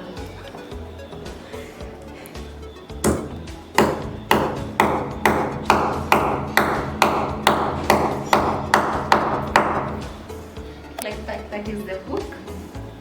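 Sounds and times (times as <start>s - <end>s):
hammer tapping a nail: 3.0s - 10.2s.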